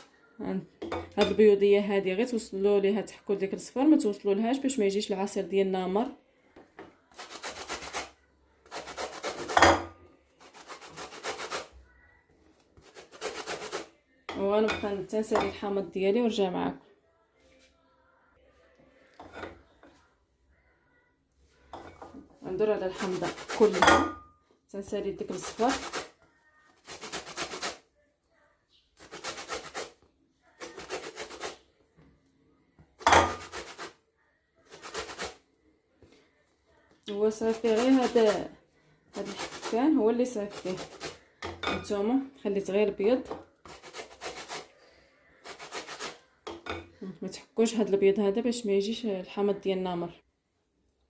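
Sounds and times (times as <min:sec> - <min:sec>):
lemon rind rasping on grater: 0:10.4 - 0:11.7, 0:12.8 - 0:13.9, 0:26.8 - 0:27.8, 0:29.0 - 0:29.9, 0:30.6 - 0:31.6, 0:37.4 - 0:38.4, 0:39.2 - 0:41.2, 0:43.6 - 0:44.7, 0:45.4 - 0:46.2
peel rasping on a grater: 0:39.2 - 0:39.8, 0:40.4 - 0:41.2, 0:45.4 - 0:46.2.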